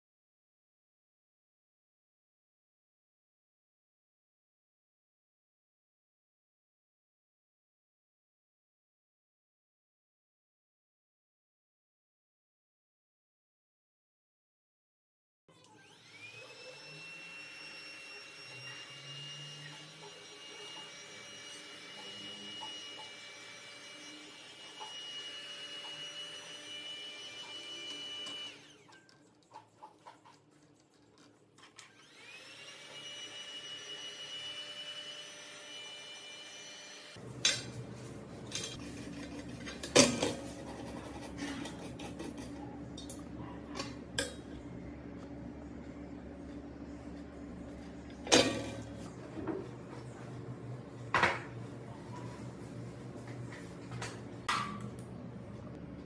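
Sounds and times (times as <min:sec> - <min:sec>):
small electric tool motor whine: 0:15.5 - 0:29.0, 0:31.8 - 0:37.2.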